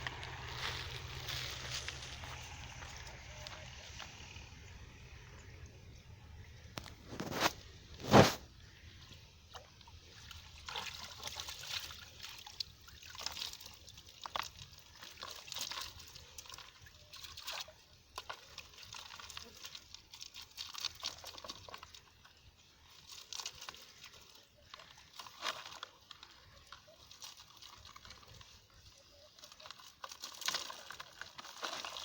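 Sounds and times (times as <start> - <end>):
water splashing and dripping: 8.6 - 32.0.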